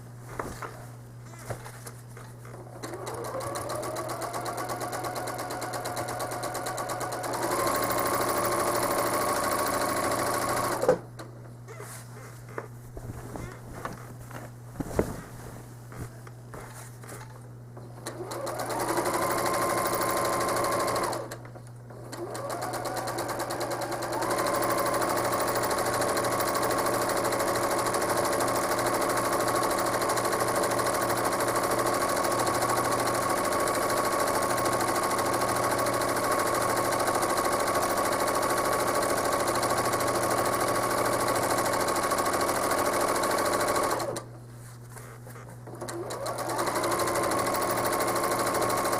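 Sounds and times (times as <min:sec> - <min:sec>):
sewing machine running: 0:02.6 - 0:11.0, 0:18.0 - 0:44.2, 0:45.7 - 0:48.9.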